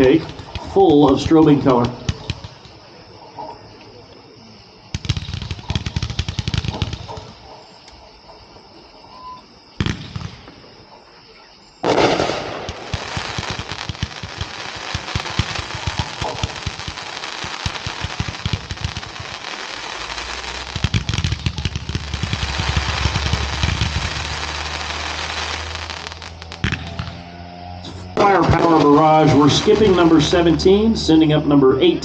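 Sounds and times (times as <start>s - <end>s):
firework pops and crack: 0.0s - 2.9s, 4.9s - 8.0s, 9.8s - 10.7s, 11.8s - 27.2s
rapid firework shots: 0.0s - 3.1s, 4.8s - 7.8s, 9.8s - 11.0s, 11.8s - 27.2s, 28.2s - 30.9s.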